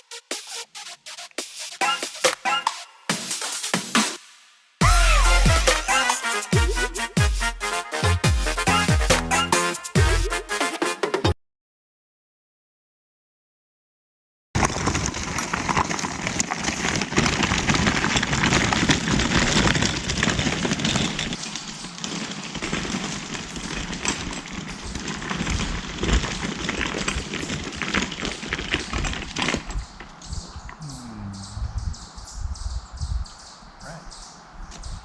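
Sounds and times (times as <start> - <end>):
footsteps crunching dry leaves: 14.6 - 30.6.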